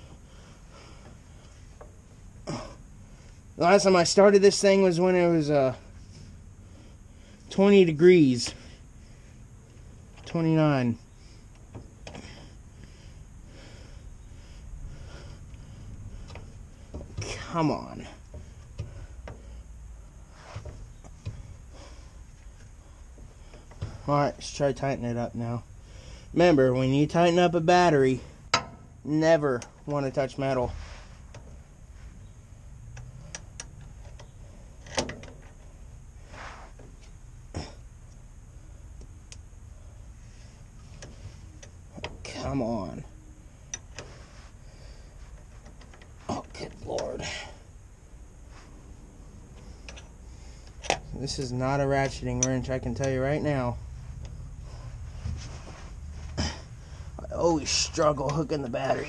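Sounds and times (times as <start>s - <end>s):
man breathing and sniffing: 0.0s - 3.6s, 5.8s - 7.6s, 8.4s - 10.2s, 11.0s - 24.1s, 25.6s - 26.4s, 30.7s - 41.9s, 43.3s - 46.3s, 47.1s - 51.2s, 53.8s - 57.3s
low steady hiss: 0.0s - 59.0s.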